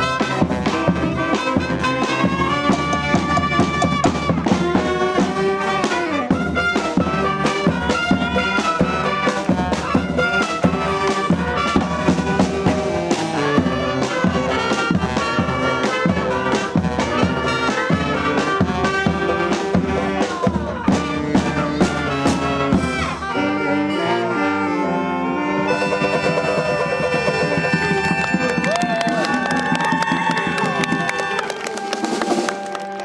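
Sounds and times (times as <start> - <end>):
brass band playing: 0.0 - 33.0.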